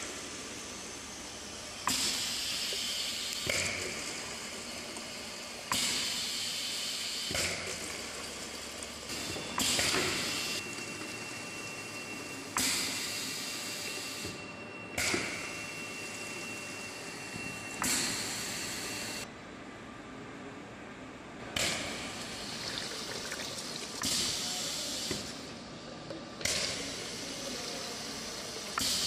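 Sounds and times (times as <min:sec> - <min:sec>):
filling machine hissing: 0:00.0 - 0:19.3, 0:22.0 - 0:25.5, 0:26.7 - 0:29.0.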